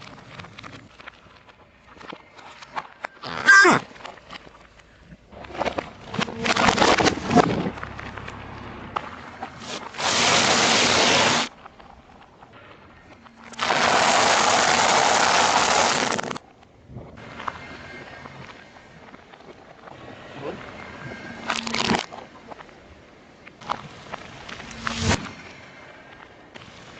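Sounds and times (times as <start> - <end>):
objects crushed under car tyre: 5.3 - 16.4, 21.1 - 22.3
steady hissing noise: 9.0 - 21.5.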